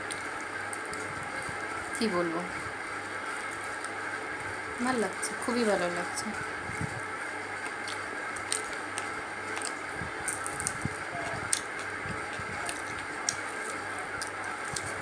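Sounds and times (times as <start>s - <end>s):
chewing and food handling clicks: 7.6s - 15.0s.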